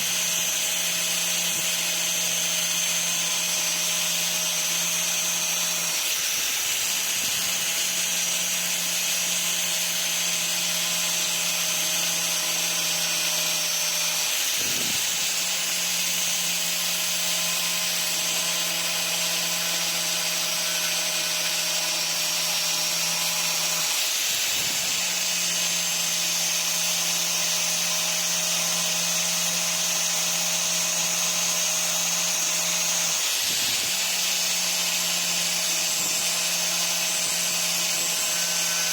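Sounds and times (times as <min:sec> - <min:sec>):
power drill grinding: 0:00.0 - 0:38.9.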